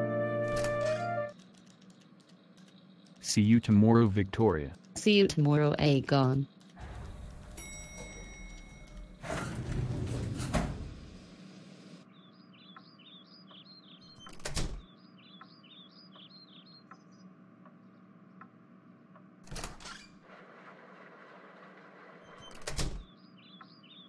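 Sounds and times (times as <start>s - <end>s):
small bird chirping: 1.3s - 6.8s, 12.0s - 18.6s, 22.2s - 24.0s.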